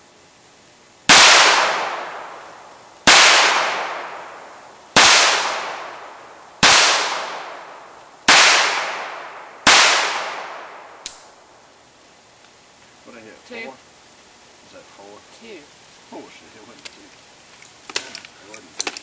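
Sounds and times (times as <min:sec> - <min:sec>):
revolver gunshots: 0:01.1 - 0:11.4.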